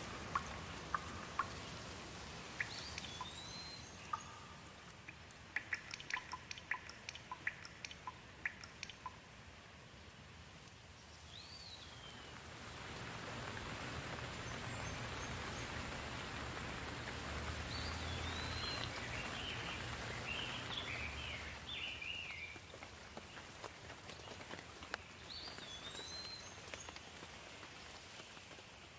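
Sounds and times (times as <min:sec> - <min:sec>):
birds chirping: 0:00.0 - 0:09.2, 0:17.5 - 0:27.3
steady rain falling: 0:00.0 - 0:28.9.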